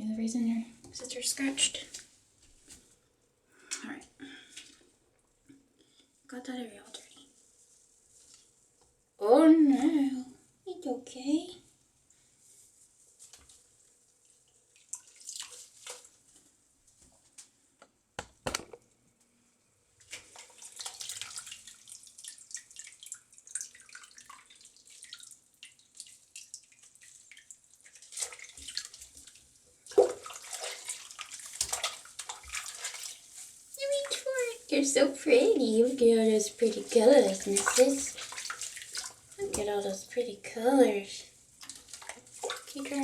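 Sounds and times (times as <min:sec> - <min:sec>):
water splashing in a sink: 0:13.3 - 0:16.4, 0:20.0 - 0:40.6, 0:41.3 - 0:43.0.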